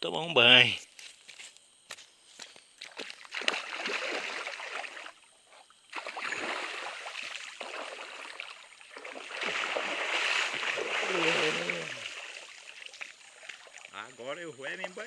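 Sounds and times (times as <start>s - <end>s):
water splashing: 2.8s - 5.2s, 5.9s - 15.0s.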